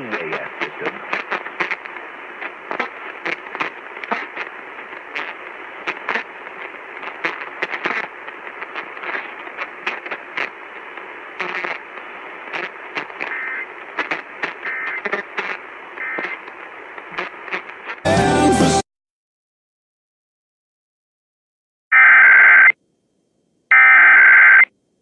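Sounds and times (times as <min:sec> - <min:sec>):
radio static hiss: 0:00.0 - 0:18.1, 0:21.9 - 0:22.8, 0:23.7 - 0:24.7.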